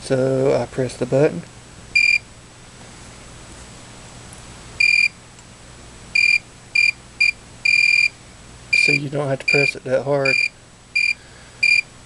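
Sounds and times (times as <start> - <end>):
multimeter short high beeps: 2.0 - 2.2, 4.8 - 5.2, 6.2 - 8.1, 8.8 - 11.9.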